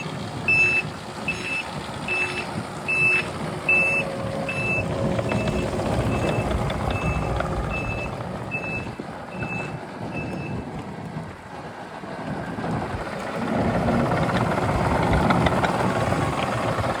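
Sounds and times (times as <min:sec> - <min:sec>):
backup alarm beeping: 0:00.0 - 0:10.6
diesel engine running: 0:00.0 - 0:17.0.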